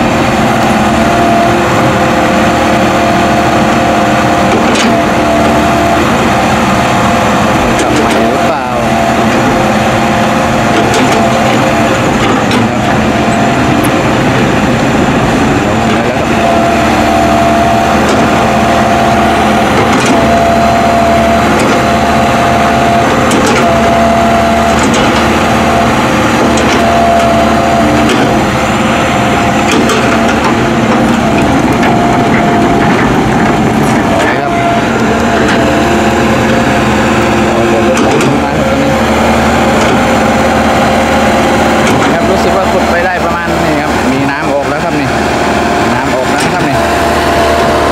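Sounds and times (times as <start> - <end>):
excavator engine and hydraulics: 0.0 - 47.9
hydraulic whine: 0.0 - 47.9
metal clanks: 28.0 - 28.5, 29.3 - 35.8, 37.6 - 38.6.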